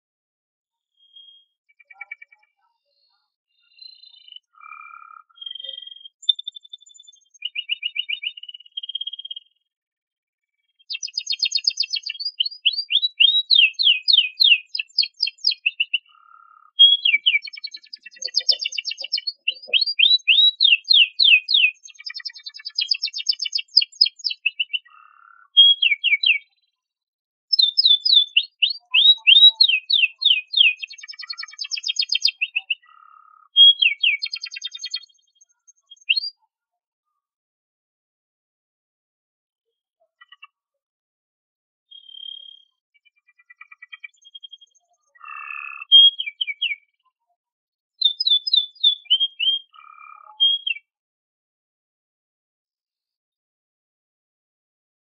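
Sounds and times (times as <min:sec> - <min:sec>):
canary singing trills: 0:01.0 - 0:09.6, 0:10.8 - 0:26.6, 0:27.5 - 0:36.5, 0:41.9 - 0:47.0, 0:48.0 - 0:50.9.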